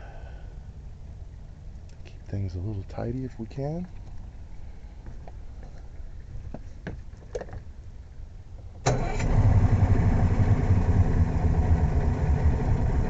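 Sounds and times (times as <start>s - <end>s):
outboard motor idling: 9.0s - 13.0s.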